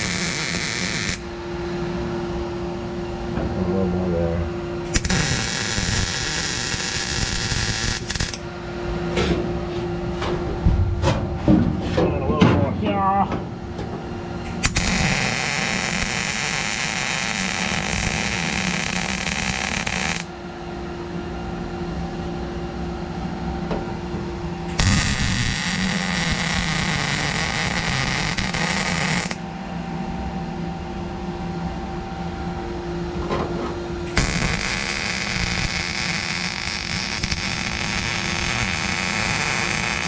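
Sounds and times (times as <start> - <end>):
welding arc crackling: 0.0 - 1.3, 4.9 - 8.4, 14.5 - 20.3, 24.7 - 29.4, 34.1 - 40.0
steady hum: 0.0 - 40.0.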